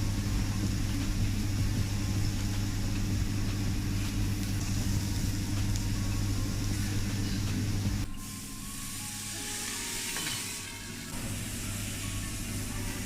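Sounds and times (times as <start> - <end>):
extraction fan humming: 0.0 - 13.0.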